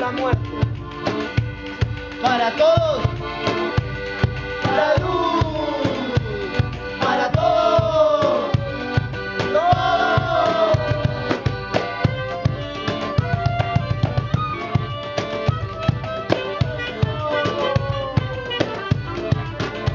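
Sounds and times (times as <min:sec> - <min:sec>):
drum strikes: 0:00.1 - 0:19.9
people singing: 0:04.5 - 0:11.8.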